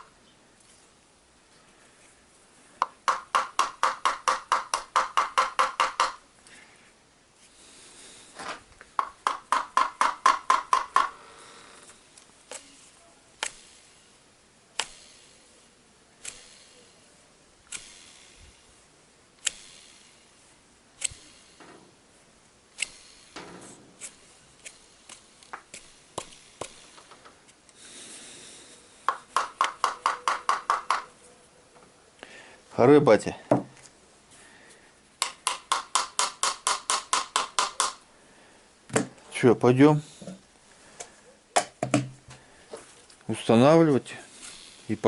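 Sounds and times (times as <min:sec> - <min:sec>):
sharp clicks: 0:13.4 - 0:13.7, 0:14.8 - 0:15.2, 0:17.6 - 0:18.4, 0:19.4 - 0:20.0, 0:22.7 - 0:23.4.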